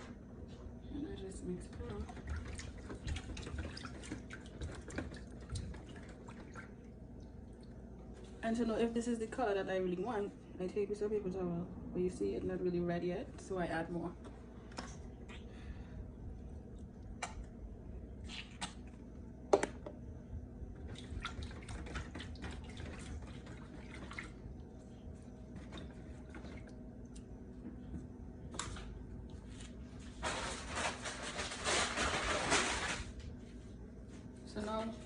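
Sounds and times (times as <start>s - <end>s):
water splashing in foil pan: 30.2s - 33.1s.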